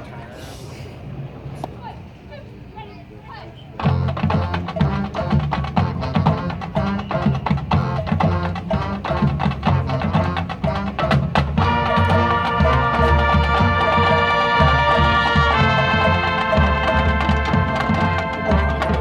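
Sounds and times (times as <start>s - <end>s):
drum and percussion strikes: 3.8s - 19.0s
marching band playing: 3.8s - 19.0s.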